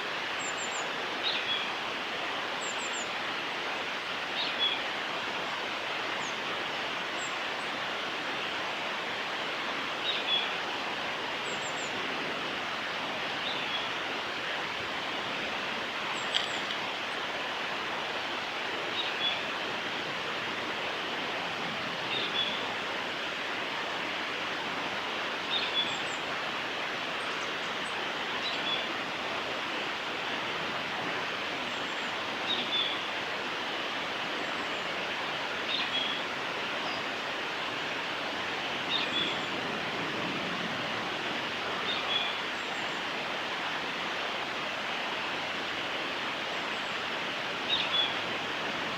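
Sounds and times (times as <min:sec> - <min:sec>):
bird singing: 0:38.9 - 0:39.5.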